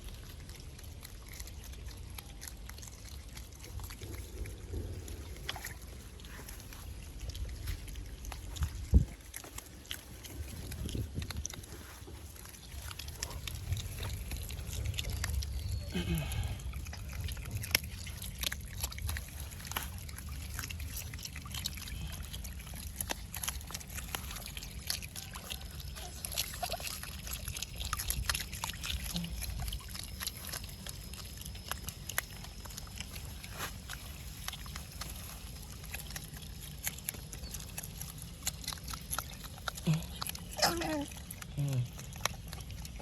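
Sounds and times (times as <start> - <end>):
otter snuffling: 0.0 - 43.0
water sloshing and trickling: 0.0 - 43.0.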